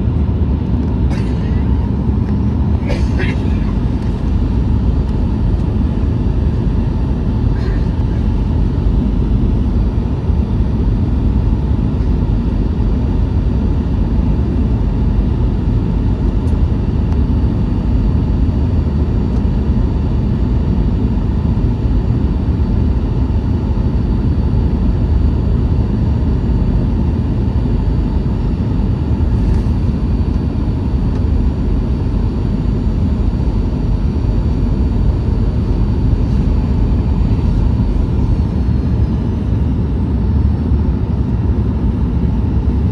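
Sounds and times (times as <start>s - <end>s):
jet engines humming: 0.0s - 11.4s, 28.9s - 42.9s
faint steady whining tones: 29.1s - 42.9s.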